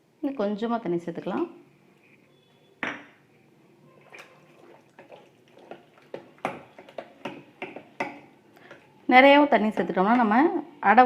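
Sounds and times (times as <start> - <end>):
wet batter squelching: 4.0 - 8.3.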